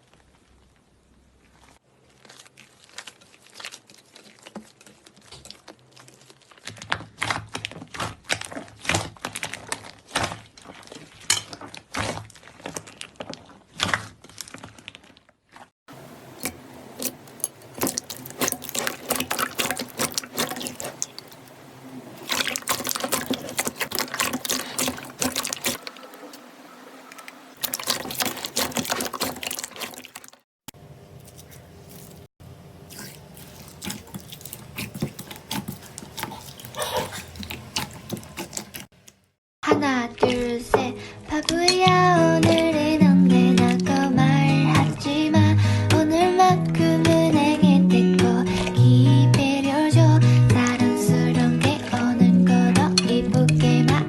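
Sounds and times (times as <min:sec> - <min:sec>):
slime squelching and popping: 0:01.5 - 0:15.7, 0:16.4 - 0:21.6, 0:22.2 - 0:25.9, 0:27.6 - 0:30.4, 0:32.9 - 0:39.3.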